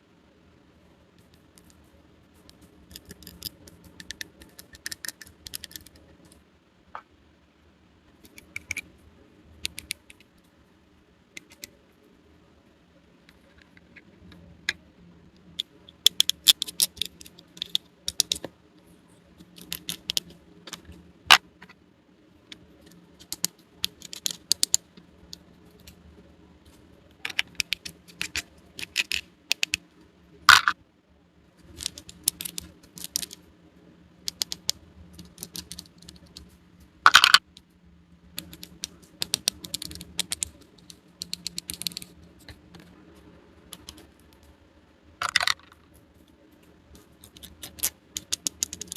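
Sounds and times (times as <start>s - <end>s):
plastic toy pieces clicking: 2.9s - 6.0s, 15.6s - 18.5s, 19.6s - 21.4s, 23.2s - 24.8s, 27.2s - 29.8s, 30.5s - 30.8s, 31.7s - 33.4s, 34.2s - 36.4s, 37.1s - 37.5s, 38.4s - 42.1s, 45.2s - 45.8s, 47.2s - 48.9s.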